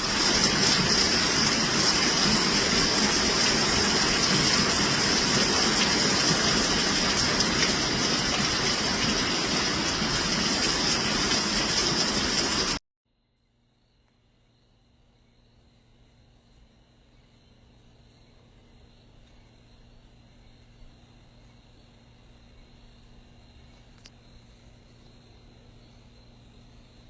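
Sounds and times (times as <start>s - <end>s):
floodwater rushing: 0.0s - 12.8s.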